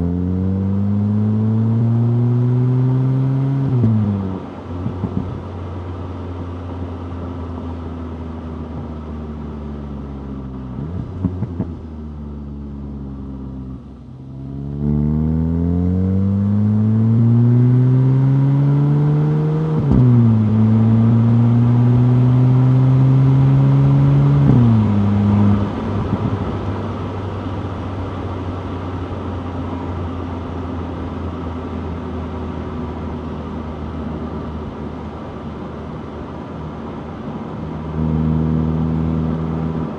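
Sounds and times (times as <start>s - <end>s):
car engine revving and shifting: 0.0s - 5.6s, 14.2s - 32.8s, 37.7s - 39.9s.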